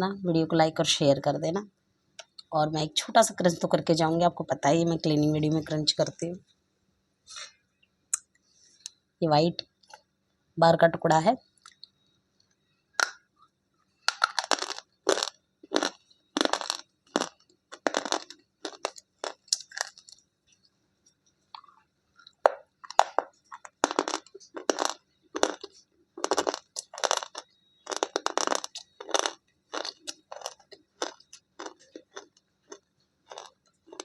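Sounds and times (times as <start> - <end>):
chalk being chewed with crunches: 14.1 - 20.7, 21.5 - 34.0.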